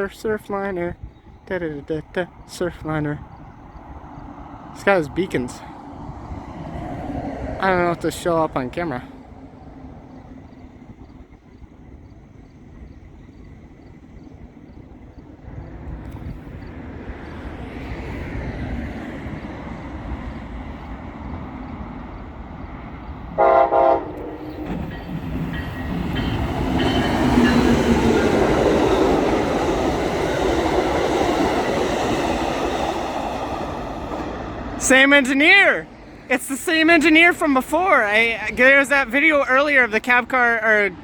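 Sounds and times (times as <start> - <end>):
train rumble and rail noise: 0.0 - 41.0
train horn blast: 23.4 - 24.6.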